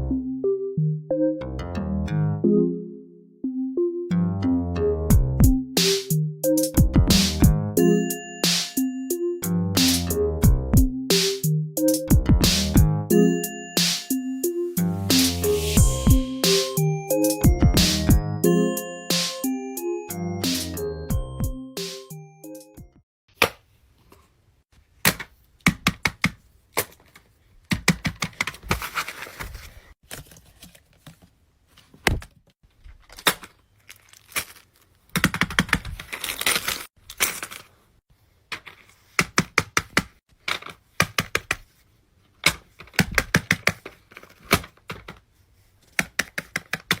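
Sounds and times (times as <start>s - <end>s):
plastic toys clicking and snapping: 25.0s - 28.8s, 32.8s - 37.7s, 38.5s - 41.6s, 42.3s - 45.2s, 45.8s - 47.0s
packaging crinkling and tearing: 28.6s - 31.1s, 32.8s - 37.8s.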